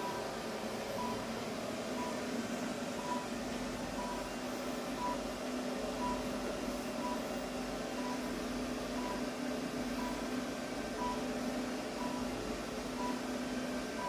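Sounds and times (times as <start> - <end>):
steady low hum: 0.0 - 14.0
electronic device beeping: 1.0 - 1.3, 1.9 - 2.2, 3.0 - 4.3, 5.0 - 5.2.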